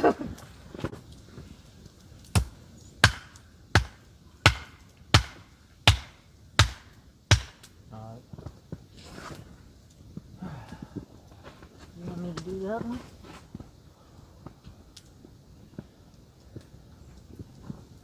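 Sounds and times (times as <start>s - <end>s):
hammer blows: 2.4s - 7.6s.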